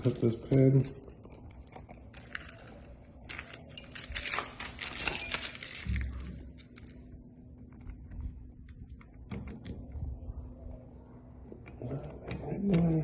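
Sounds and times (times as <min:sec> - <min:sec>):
metal keys jangling: 0:00.0 - 0:07.1.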